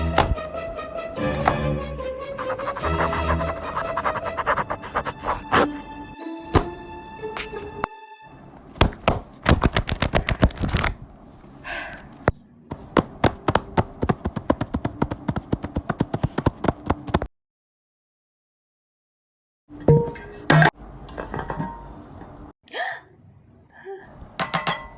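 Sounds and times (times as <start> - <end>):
rapid sharp taps and clicks: 13.2 - 17.3.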